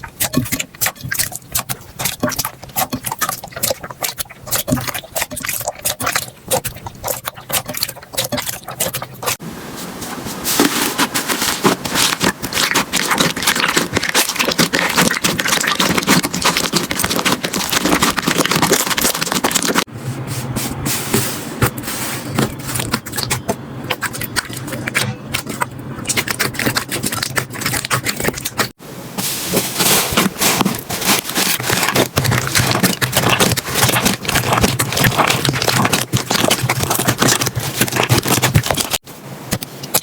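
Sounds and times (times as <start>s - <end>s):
slime crackling and popping: 11.0s - 19.9s, 29.8s - 40.0s.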